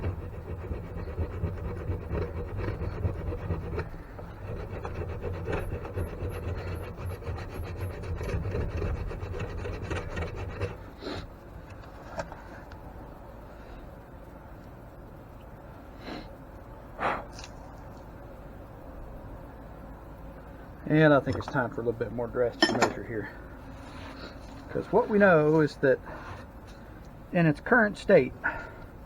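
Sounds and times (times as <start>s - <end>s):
metal file scraping metal: 0.0s - 10.8s.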